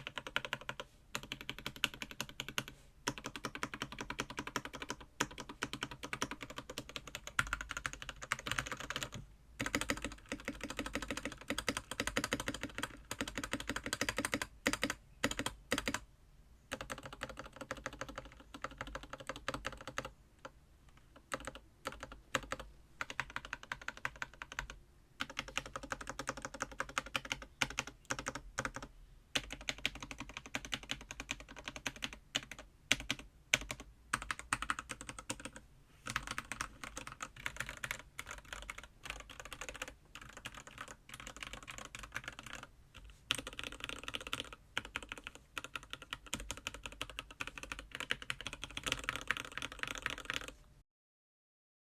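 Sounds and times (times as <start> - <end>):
mechanical keyboard typing: 0.0 - 16.0, 16.7 - 50.6.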